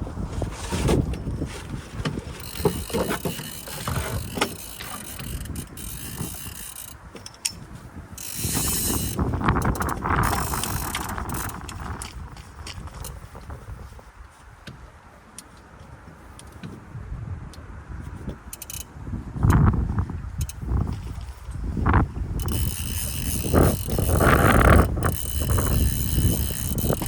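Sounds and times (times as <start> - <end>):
fishing reel ratchet clicking: 2.4 - 7.6, 8.2 - 12.1, 18.5 - 18.9, 22.4 - 27.0.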